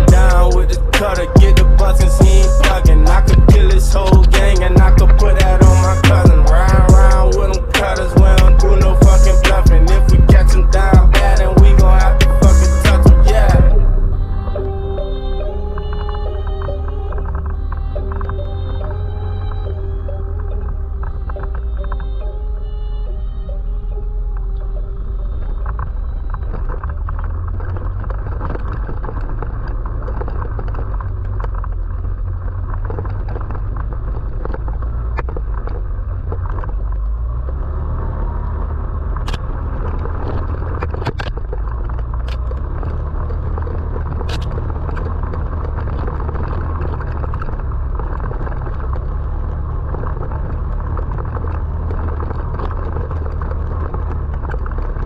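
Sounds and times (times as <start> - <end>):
off-road vehicle engine: 0.0 - 55.0
wind rumble: 0.0 - 55.0
sharp clicks and knocks: 39.2 - 55.0.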